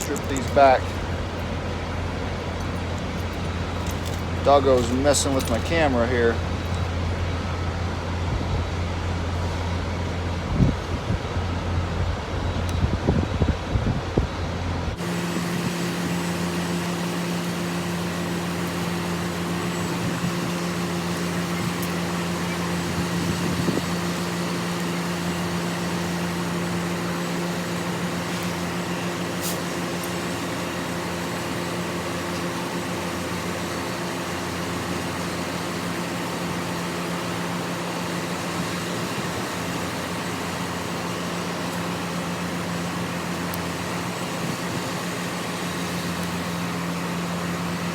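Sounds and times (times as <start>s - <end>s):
engine idling: 0.0s - 47.9s.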